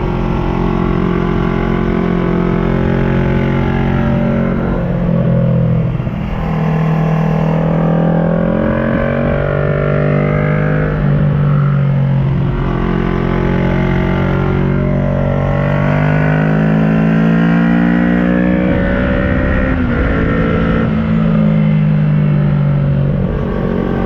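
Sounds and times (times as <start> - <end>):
motorcycle engine revving: 0.0 - 24.0.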